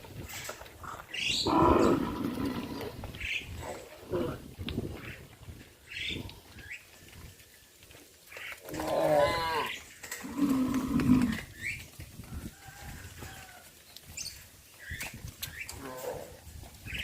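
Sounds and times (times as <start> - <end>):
cows mooing: 1.4 - 3.1, 8.7 - 11.5.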